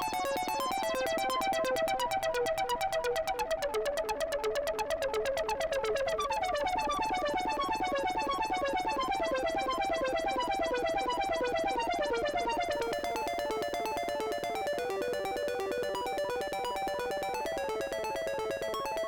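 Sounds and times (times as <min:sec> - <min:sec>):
synthesizer sequenced notes: 0:00.0 - 0:19.0.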